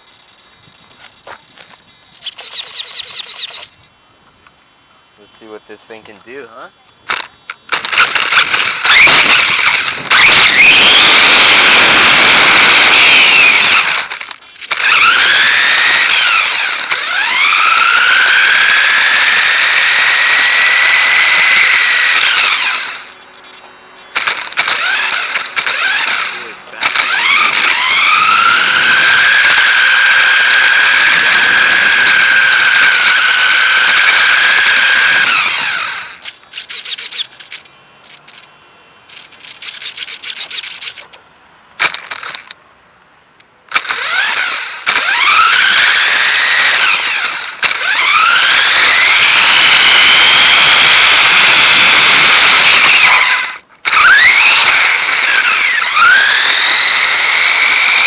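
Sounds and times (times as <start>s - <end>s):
electric motor whining: 7.1s - 38.5s, 43.7s - 58.0s.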